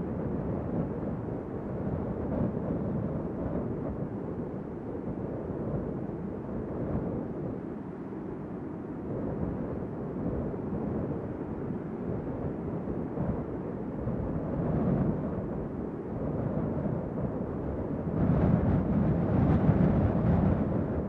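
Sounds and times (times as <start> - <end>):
wind blowing: 9.1 - 21.0.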